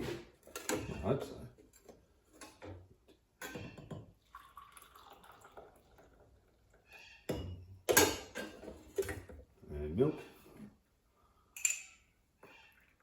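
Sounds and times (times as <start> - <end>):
coffee pouring into cup: 4.0 - 6.9.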